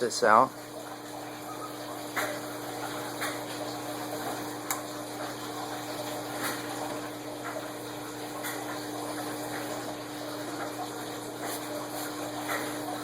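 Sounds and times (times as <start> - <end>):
background hiss and hum: 0.0 - 13.0.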